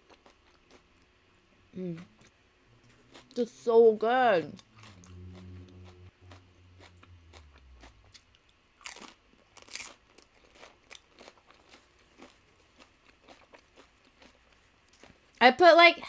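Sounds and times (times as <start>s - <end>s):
tortilla chips crunching: 0.0s - 1.0s, 5.8s - 15.4s.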